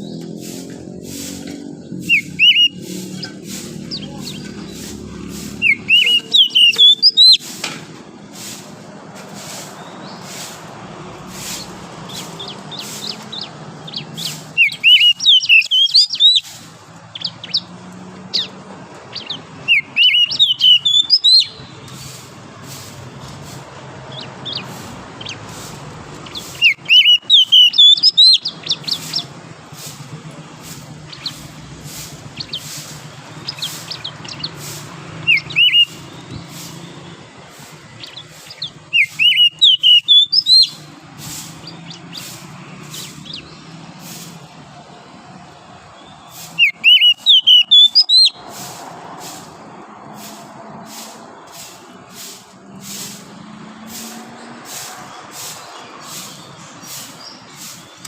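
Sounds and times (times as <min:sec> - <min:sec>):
soft bird chirps: 0:00.0 - 0:07.6, 0:09.4 - 0:44.6, 0:46.0 - 0:48.7, 0:50.8 - 0:58.0
bird whistled song: 0:02.0 - 0:04.8, 0:05.6 - 0:07.6, 0:11.4 - 0:17.7, 0:19.1 - 0:22.2, 0:24.1 - 0:30.0, 0:30.6 - 0:44.3, 0:46.0 - 0:48.7.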